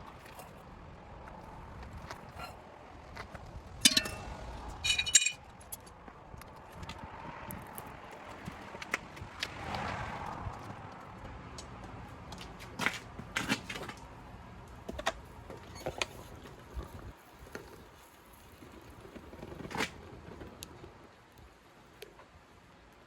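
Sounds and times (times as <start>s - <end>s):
low steady hum: 0.0s - 5.6s.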